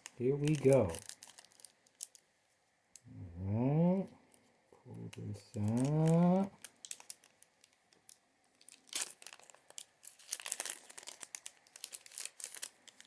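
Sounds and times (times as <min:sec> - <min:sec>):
foil wrapper tearing: 0:00.0 - 0:02.2, 0:05.4 - 0:13.0
foil wrapper crinkling: 0:00.0 - 0:02.3, 0:05.1 - 0:13.0.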